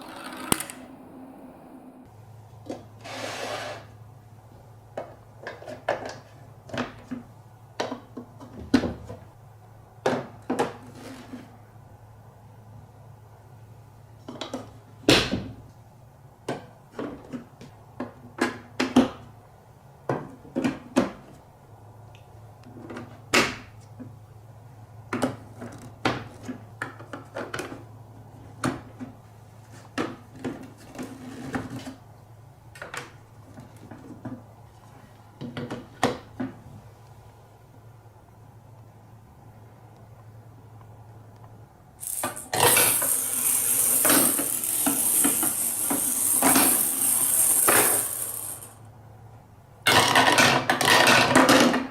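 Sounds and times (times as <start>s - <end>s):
marbles clacking on blocks: 42.0s - 48.8s.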